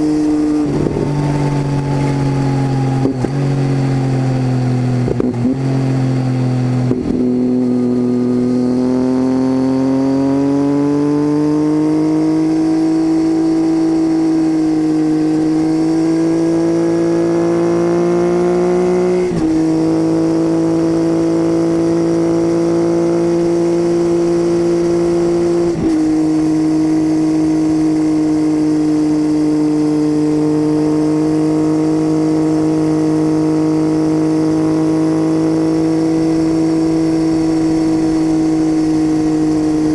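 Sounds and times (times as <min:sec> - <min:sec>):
gear changes: 0:00.0 - 0:11.4
motorcycle engine droning: 0:00.0 - 0:39.9.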